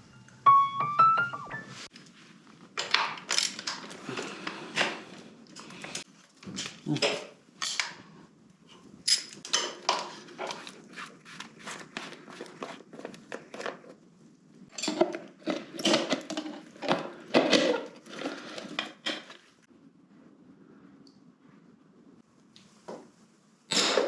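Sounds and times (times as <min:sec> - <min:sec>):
metal tools clinking and knocking: 0:14.7 - 0:17.8.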